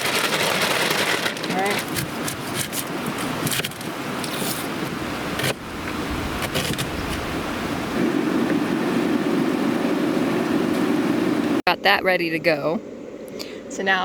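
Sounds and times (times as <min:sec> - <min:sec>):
cooking gear clicks and scrapes: 0:00.0 - 0:04.8.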